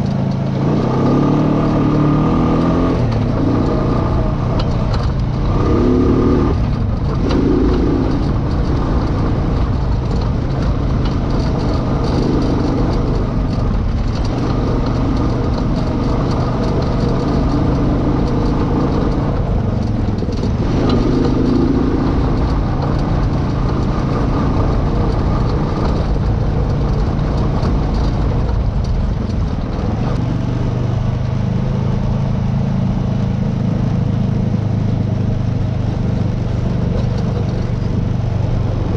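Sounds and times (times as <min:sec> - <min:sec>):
off-road vehicle engine running: 0:00.0 - 0:38.9
steady low rumble: 0:01.7 - 0:32.4.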